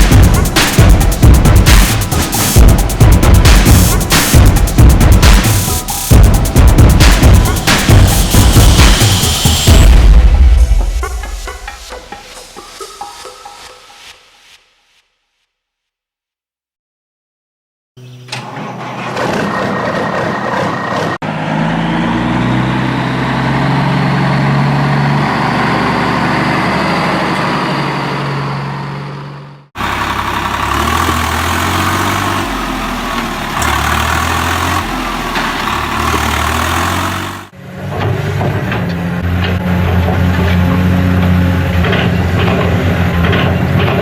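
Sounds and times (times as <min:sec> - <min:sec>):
heavy truck engine idling: 0:23.7 - 0:37.6.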